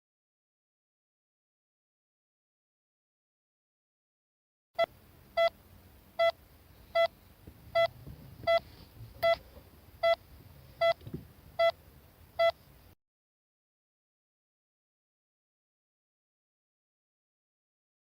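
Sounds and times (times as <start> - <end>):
heart monitor beeping: 4.8 - 5.6, 6.2 - 9.4, 10.0 - 11.8, 12.4 - 12.6.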